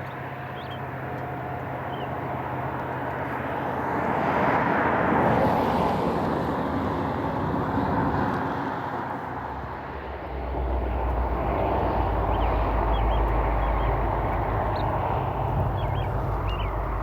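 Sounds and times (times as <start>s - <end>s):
bird chirping: 0.0s - 0.8s, 12.2s - 17.0s
locomotive engines rumbling: 9.1s - 17.0s.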